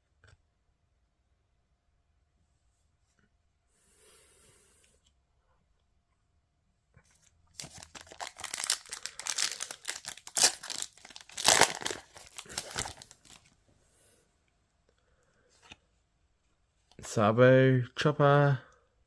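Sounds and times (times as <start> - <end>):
foil wrapper ripping: 7.6 - 13.4
foil wrapper crinkling: 7.6 - 13.5.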